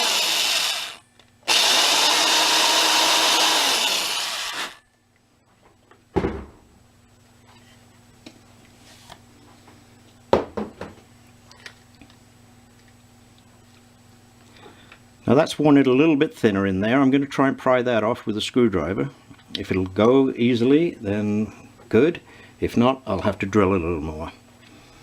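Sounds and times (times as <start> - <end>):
power drill boring into metal: 0.0 - 4.8.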